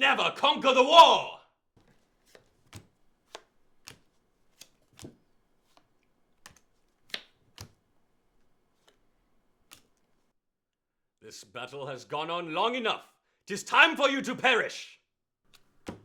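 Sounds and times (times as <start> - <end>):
cards tapping on table: 1.8 - 7.8, 8.4 - 10.1, 15.5 - 16.0.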